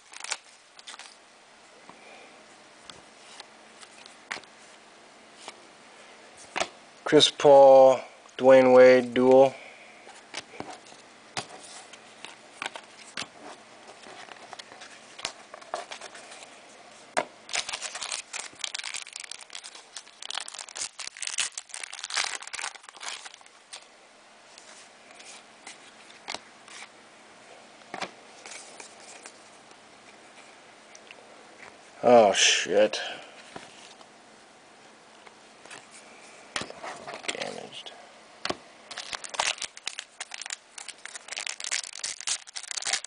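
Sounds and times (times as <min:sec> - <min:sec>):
plastic wrapping crinkling: 0:00.0 - 0:01.2, 0:17.4 - 0:23.9, 0:38.9 - 0:43.0.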